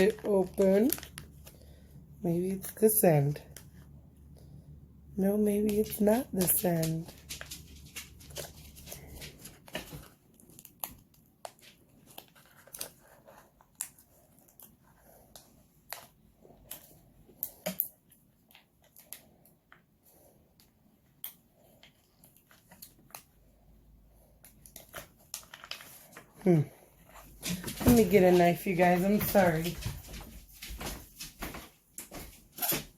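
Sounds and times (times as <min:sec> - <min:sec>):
plastic pouch crinkling: 0:00.0 - 0:01.6, 0:24.6 - 0:26.3.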